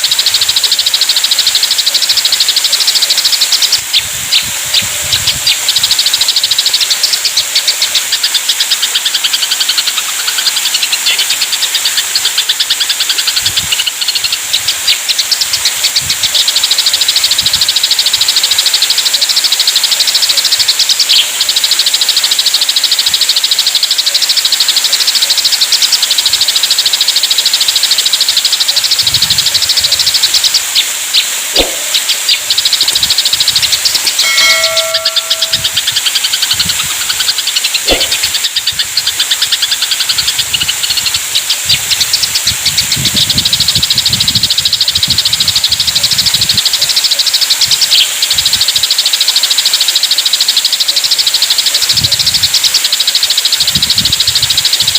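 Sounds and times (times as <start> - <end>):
sparrows chattering: 0.0 - 54.9
steady high hiss: 0.0 - 54.9.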